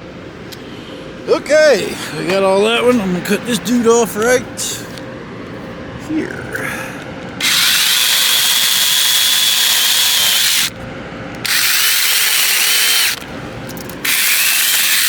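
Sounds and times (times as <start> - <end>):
electric chainsaw whining: 7.4 - 10.8, 11.4 - 13.3, 14.0 - 15.0.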